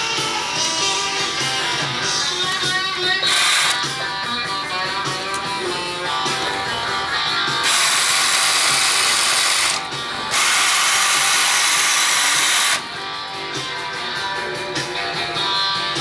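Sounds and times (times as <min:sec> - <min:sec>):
rock guitar music: 0:00.0 - 0:16.0
small mechanism whirring: 0:03.2 - 0:03.9, 0:07.6 - 0:12.9.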